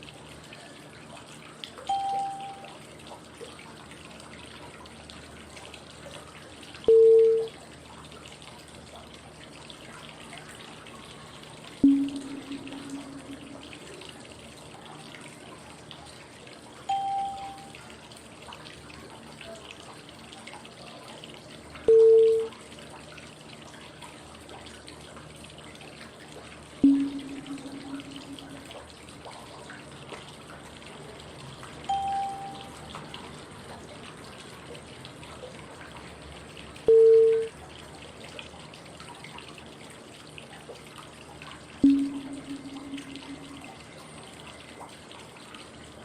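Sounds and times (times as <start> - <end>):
flowing water white noise: 0.0 - 18.4, 25.6 - 29.6, 30.8 - 38.3
short prompt tones: 1.9 - 2.7, 6.9 - 7.5, 11.8 - 14.0, 16.9 - 17.7, 21.9 - 22.5, 26.8 - 28.8, 31.9 - 32.8, 36.9 - 37.5, 41.8 - 43.7.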